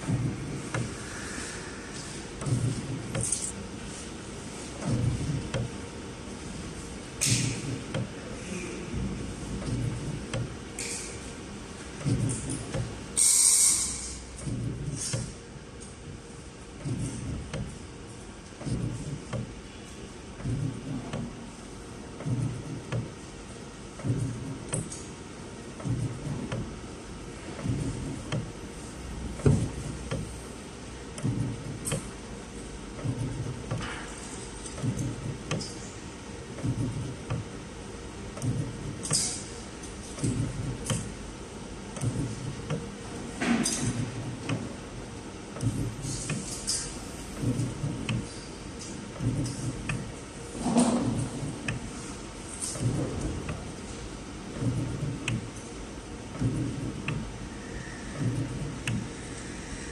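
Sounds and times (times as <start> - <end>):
robot motors humming: 1.9 - 3.6, 7.2 - 10.9, 11.9 - 15.4, 16.0 - 17.9, 18.5 - 21.4, 22.2 - 23.2, 24.0 - 25.0, 25.8 - 30.4, 31.0 - 39.4, 40.0 - 41.2, 41.8 - 51.9, 52.5 - 59.9
machine sharp clicks: 38.3 - 39.5, 41.9 - 42.9, 45.5 - 46.8, 54.5 - 55.7.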